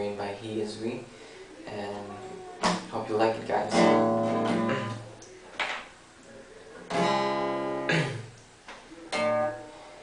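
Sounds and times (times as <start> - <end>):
acoustic guitar strumming chords: 2.6 - 5.1, 6.9 - 8.3, 9.1 - 10.0.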